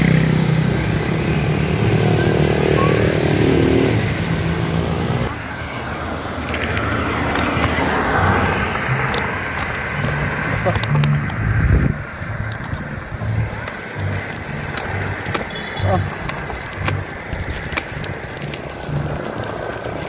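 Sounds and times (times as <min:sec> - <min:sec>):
vehicle engine running: 0:07.0 - 0:20.0.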